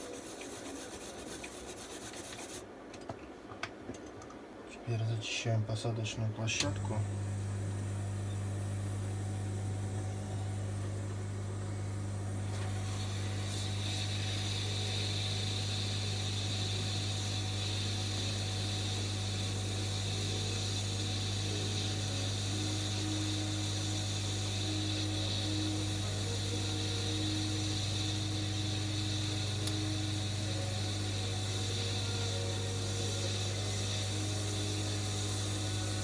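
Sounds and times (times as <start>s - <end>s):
electrical hum and fan noise: 0.0s - 36.0s
hiss: 12.8s - 36.0s.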